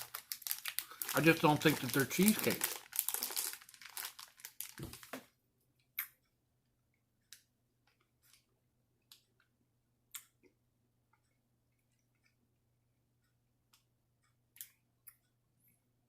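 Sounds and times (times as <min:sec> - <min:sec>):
candy bag crinkling: 0:00.0 - 0:05.2
candy being chewed: 0:00.0 - 0:05.2.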